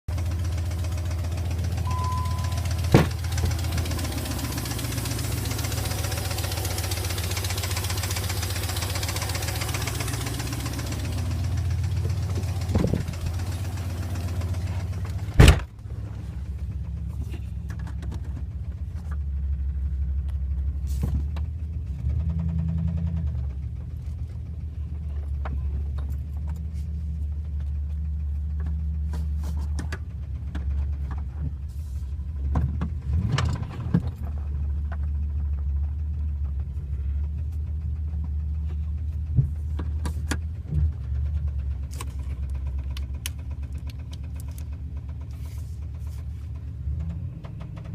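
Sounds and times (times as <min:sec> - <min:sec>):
engine running with rapid ticking: 0:00.1 - 0:47.9
loud knock: 0:02.9 - 0:03.2.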